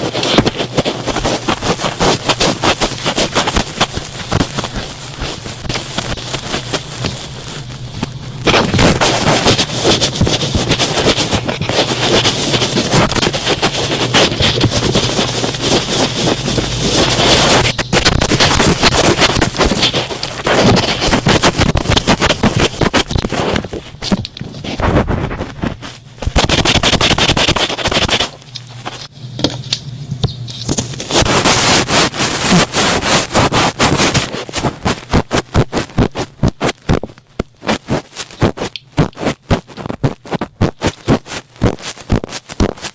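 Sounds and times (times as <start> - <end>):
swab rubbing on microphone: 0.0 - 23.7, 24.6 - 29.0, 30.8 - 36.8.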